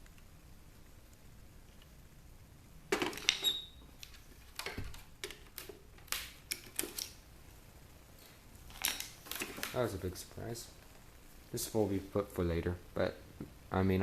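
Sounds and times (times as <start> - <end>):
plastic parts clicks and knocks: 2.9 - 7.1, 8.7 - 9.8
brief squeak: 3.4 - 3.8.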